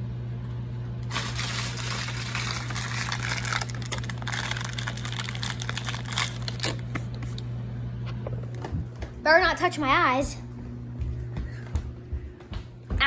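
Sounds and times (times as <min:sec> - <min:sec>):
steady low hum: 0:00.0 - 0:13.0
packaging crinkling: 0:01.0 - 0:07.4.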